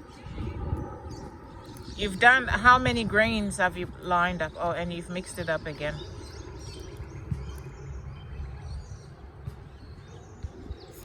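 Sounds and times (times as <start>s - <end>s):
low background rumble: 0.0s - 11.0s.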